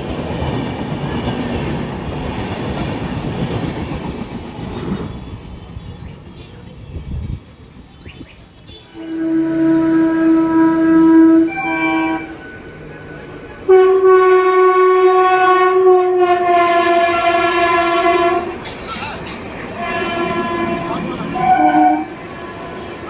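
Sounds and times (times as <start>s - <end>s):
train horn blasts: 8.6s - 12.8s, 13.6s - 18.6s, 19.7s - 23.0s.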